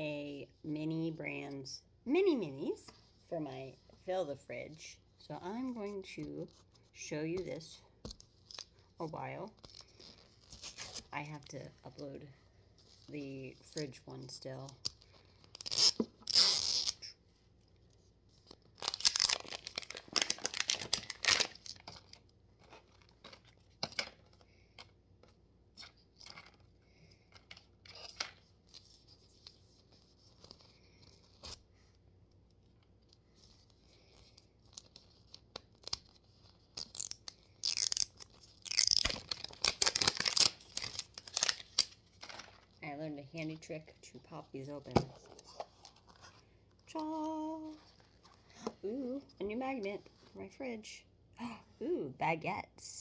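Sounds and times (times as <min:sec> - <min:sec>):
packaging being torn open: 0:18.7 - 0:22.2, 0:34.7 - 0:42.7.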